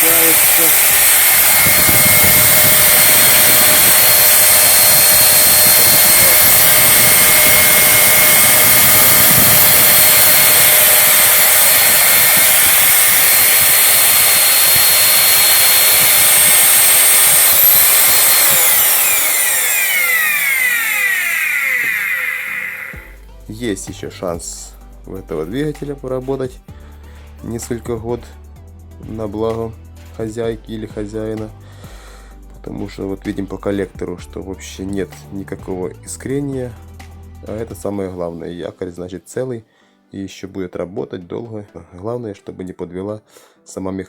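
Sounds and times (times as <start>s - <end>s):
vacuum motor high whine: 0.0s - 23.2s.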